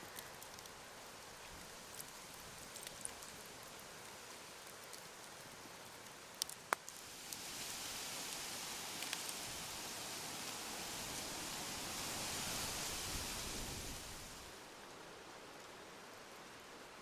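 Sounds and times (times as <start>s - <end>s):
campfire crackling and popping: 0.0s - 11.3s
steady hiss: 0.0s - 17.0s.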